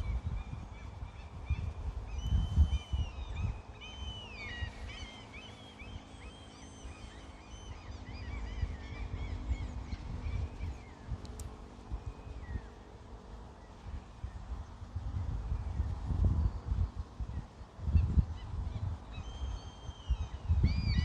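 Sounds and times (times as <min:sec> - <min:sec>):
birds chirping: 0:00.0 - 0:14.9.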